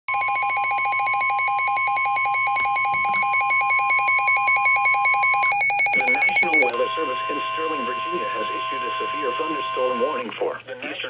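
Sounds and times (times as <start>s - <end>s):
rapid pulsing electronic beep: 0.1s - 10.2s
steady alarm tone: 0.1s - 10.3s.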